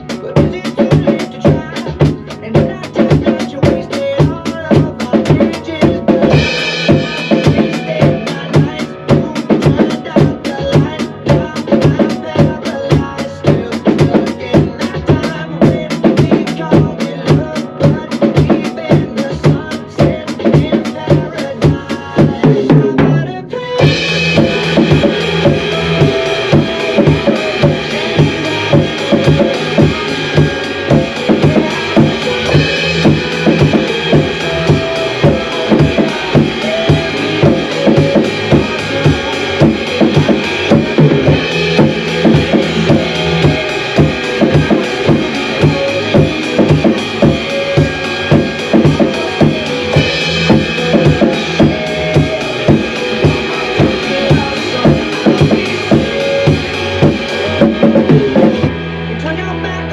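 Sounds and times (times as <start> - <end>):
acoustic drum kit playing: 0.0 - 59.5
pop backing track: 0.0 - 59.9.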